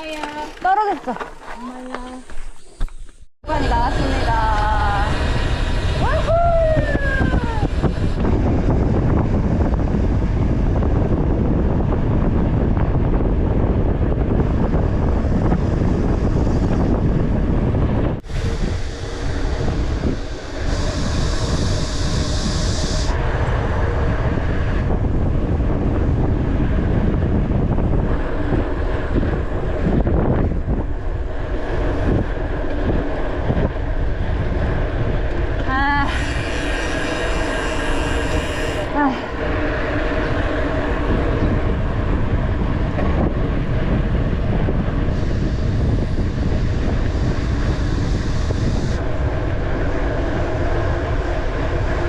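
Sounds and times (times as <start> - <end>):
wind buffeting microphone: 0.0 - 52.0
low rumble: 3.4 - 52.0
high hiss: 18.2 - 23.2, 45.1 - 49.1.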